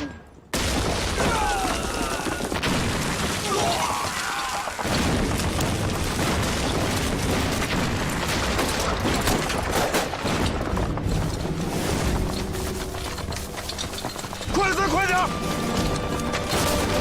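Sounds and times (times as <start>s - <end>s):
continuous gunfire crackling: 0.5s - 17.0s
low rumbling explosion booms: 4.8s - 9.6s.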